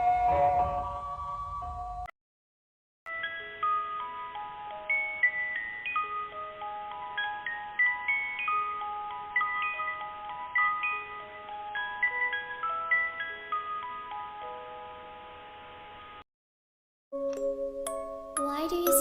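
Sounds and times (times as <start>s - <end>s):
struck bell melody: 17.2s - 19.0s.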